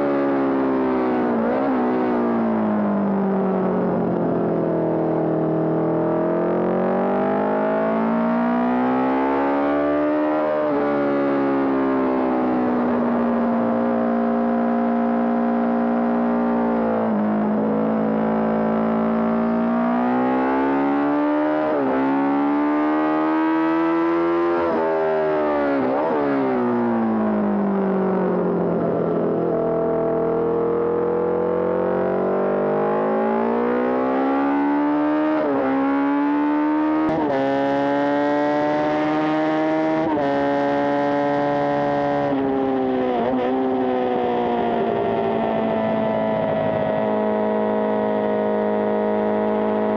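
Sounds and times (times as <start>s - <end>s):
motorcycle engine revving through gears: 3.8s - 27.6s, 28.2s - 49.9s.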